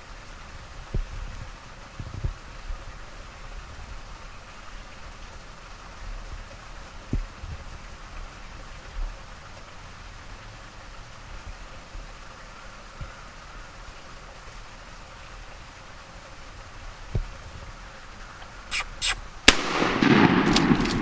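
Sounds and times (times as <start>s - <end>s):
outdoor background hiss: 0.0s - 21.0s
soft low bumps: 16.8s - 17.7s.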